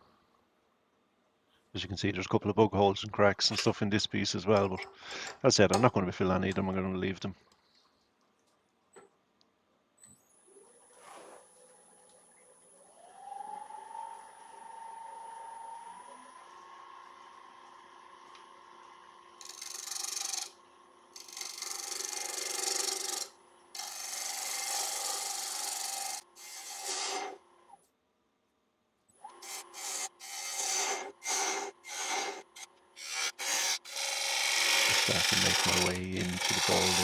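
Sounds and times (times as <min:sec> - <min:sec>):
lathe hum: 0:12.9 - 0:27.8, 0:29.2 - 0:37.0
gouge cutting wood shavings: 0:19.4 - 0:20.6, 0:21.2 - 0:27.4, 0:29.3 - 0:37.0.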